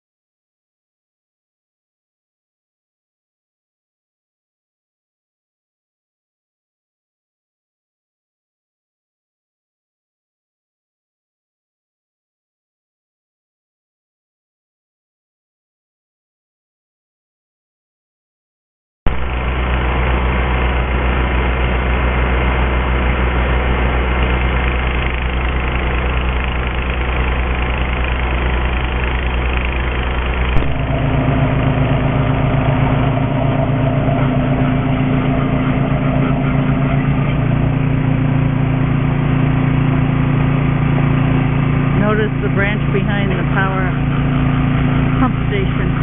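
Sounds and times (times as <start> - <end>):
engine idling: 19.1 - 46.0.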